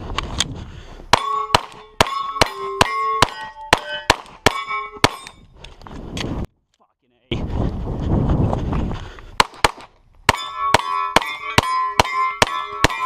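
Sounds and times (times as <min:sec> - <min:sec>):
rapid pistol shots: 0:01.1 - 0:05.2, 0:09.4 - 0:13.0
steel plate clanging: 0:01.2 - 0:05.4, 0:10.3 - 0:13.0.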